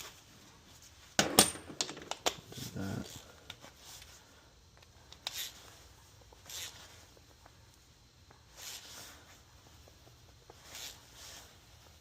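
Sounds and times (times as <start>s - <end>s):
short rustling hisses: 8.4s - 9.5s, 10.5s - 12.0s.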